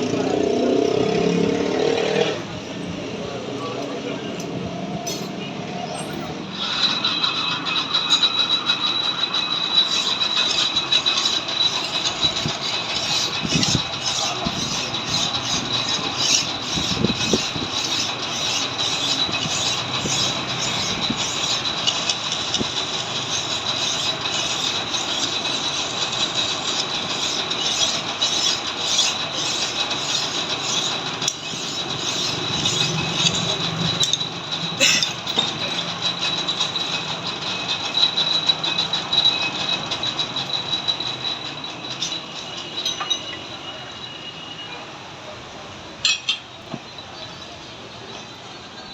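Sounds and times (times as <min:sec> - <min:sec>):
lathe whining: 0:06.3 - 0:44.6.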